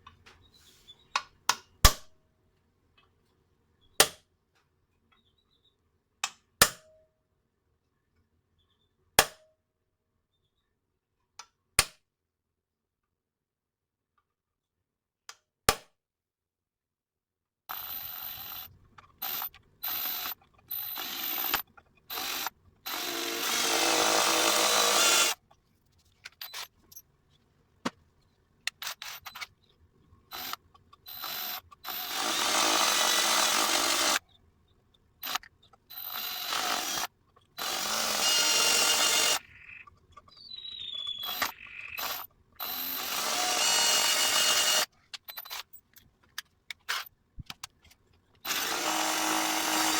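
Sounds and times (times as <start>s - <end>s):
power tool running in bursts: 19.2s - 25.4s, 31.1s - 34.2s, 36.0s - 39.4s, 41.3s - 44.9s, 48.5s - 49.9s.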